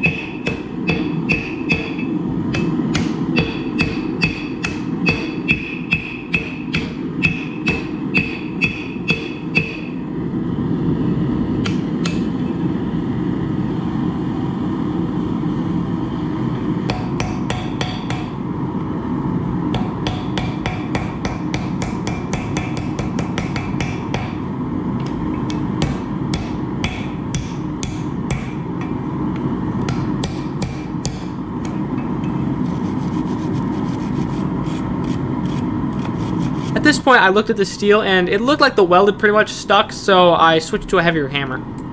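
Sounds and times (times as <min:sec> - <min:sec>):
hammer striking hot steel: 0:00.0 - 0:10.0, 0:11.6 - 0:12.4, 0:16.9 - 0:18.4, 0:19.7 - 0:29.1, 0:29.8 - 0:32.4.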